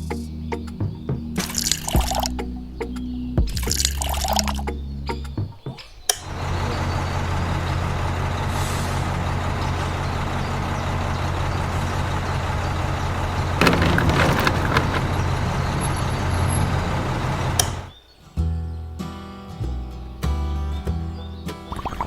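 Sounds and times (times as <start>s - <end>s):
rattling: 13.6s - 16.7s.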